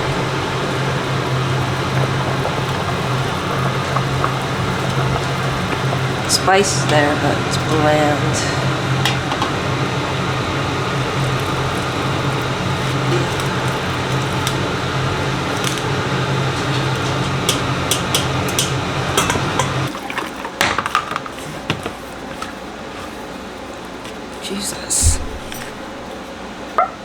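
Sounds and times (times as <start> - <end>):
range hood fan humming: 0.0 - 27.0
dishes and utensils clinking: 16.5 - 21.6.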